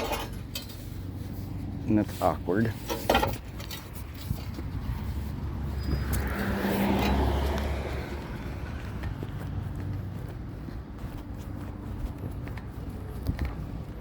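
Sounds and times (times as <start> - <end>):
car passing by: 4.8 - 10.2.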